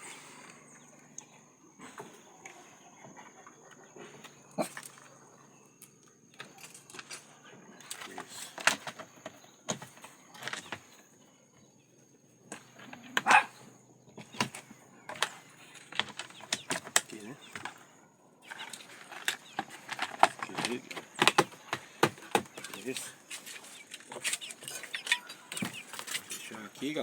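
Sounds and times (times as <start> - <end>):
clicks and knocks of handling parts: 5.8 - 10.9, 14.2 - 17.8, 18.5 - 26.5.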